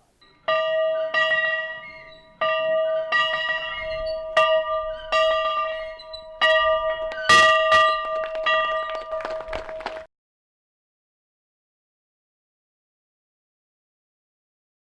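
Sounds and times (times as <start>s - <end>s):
school bell ringing: 0.2s - 9.9s.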